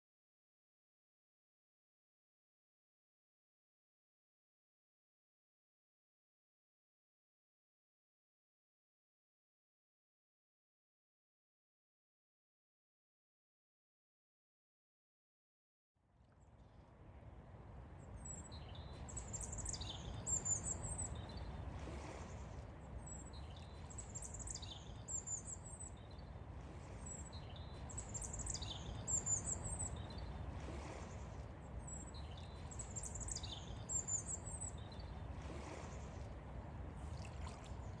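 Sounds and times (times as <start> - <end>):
songbird singing: 18.0 - 38.0.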